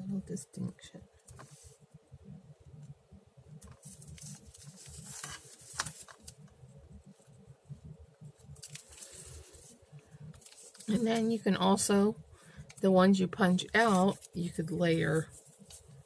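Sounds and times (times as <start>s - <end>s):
paper rustling and tapping: 3.6s - 6.4s.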